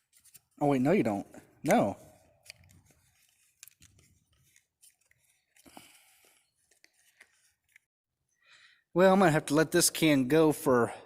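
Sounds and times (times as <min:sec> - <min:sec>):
hands fiddling with plastic cap: 0:00.0 - 0:07.9.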